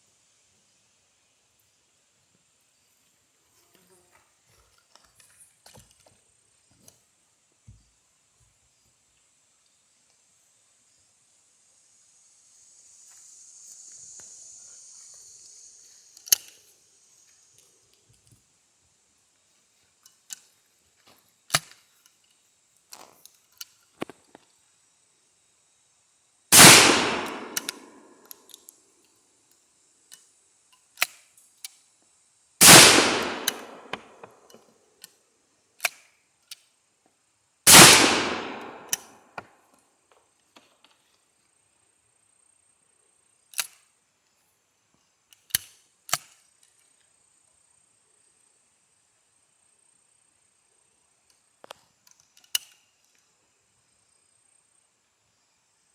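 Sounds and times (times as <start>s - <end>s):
shotgun shots: 26.5s - 28.0s, 32.6s - 34.3s, 37.7s - 39.0s
sharp clicks: 26.6s - 28.5s, 32.6s - 34.3s, 37.7s - 39.1s.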